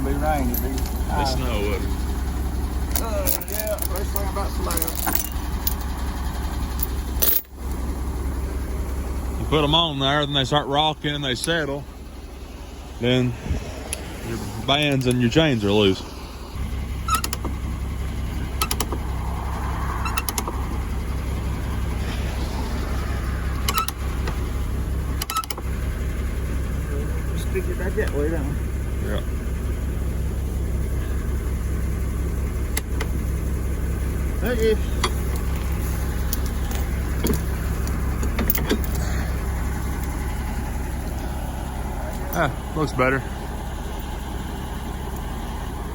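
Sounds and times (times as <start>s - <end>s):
truck engine idling: 0.0s - 45.9s.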